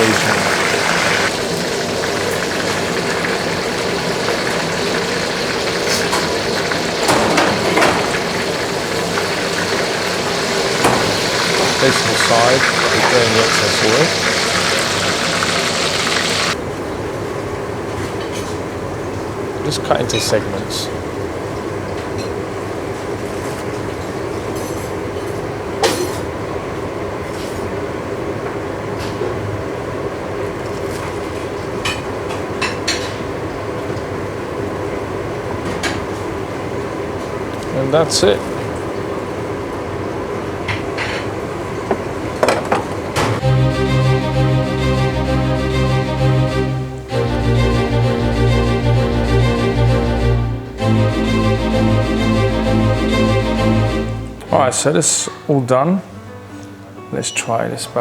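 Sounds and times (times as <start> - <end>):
hot oil sizzling: 0.0 - 16.6
steady background hum: 0.0 - 58.0.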